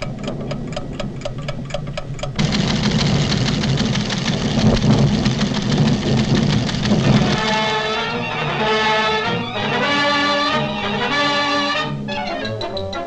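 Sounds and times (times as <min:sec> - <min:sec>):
clock-like ticking: 0:00.0 - 0:07.7
low rumble: 0:00.0 - 0:07.9
rapid mechanical clatter: 0:00.0 - 0:08.0.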